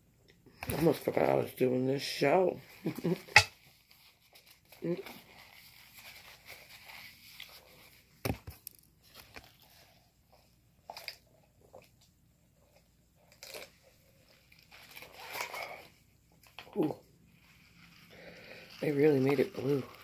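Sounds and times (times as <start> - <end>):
food crunches: 13.2 - 15.9.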